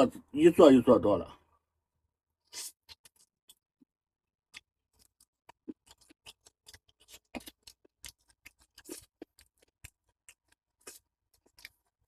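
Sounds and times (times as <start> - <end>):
eating noodles from a bowl: 2.4 - 3.7, 4.5 - 12.0.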